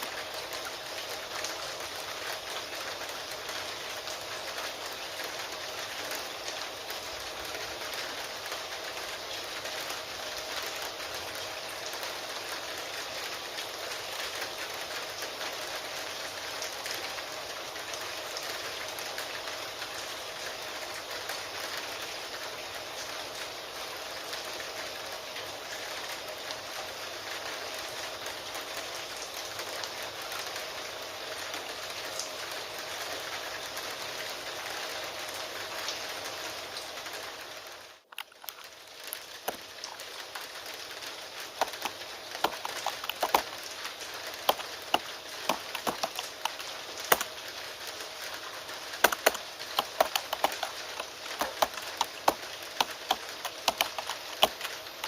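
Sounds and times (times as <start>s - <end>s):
rain hiss: 0.0s - 55.0s
keyboard typing: 41.6s - 43.6s, 44.4s - 47.3s, 49.0s - 55.0s.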